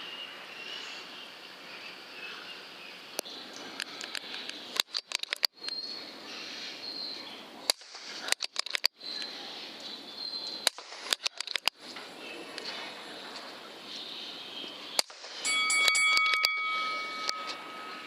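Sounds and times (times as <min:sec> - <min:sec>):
sharp clicks and knocks: 0:03.8 - 0:05.6, 0:07.7 - 0:09.0, 0:10.6 - 0:11.8.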